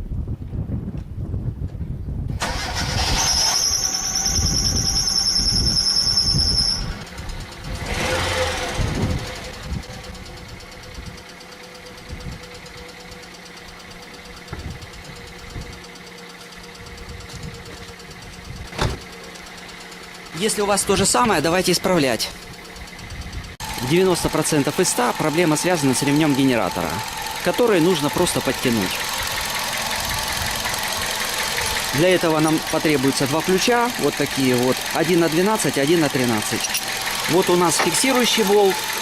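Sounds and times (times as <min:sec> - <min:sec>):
car engine starting and idling: 0:02.3 - 0:39.0
high-pitched belt squeal: 0:02.4 - 0:07.0, 0:23.8 - 0:32.9.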